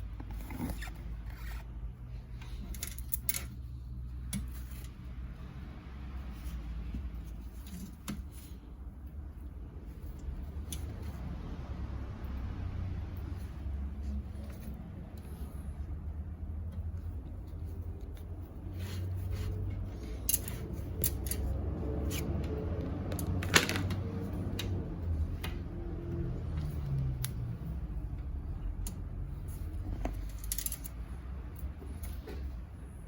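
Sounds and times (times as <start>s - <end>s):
hand tools clicking and clinking: 30.1s - 31.0s.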